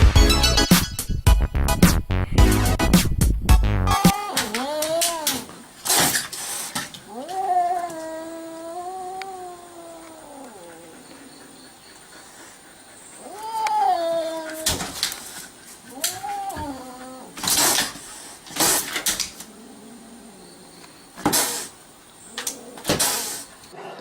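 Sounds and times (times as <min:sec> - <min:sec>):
cat yowling: 0:03.9 - 0:05.6, 0:07.1 - 0:11.0, 0:13.2 - 0:15.0, 0:15.9 - 0:17.4.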